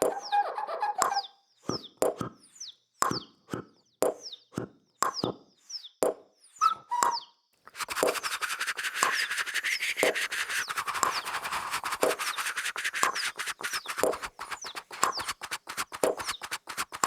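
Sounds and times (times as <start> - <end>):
beatbox pops: 7.7 - 17.0
beatbox scrubbing sounds: 7.7 - 17.0.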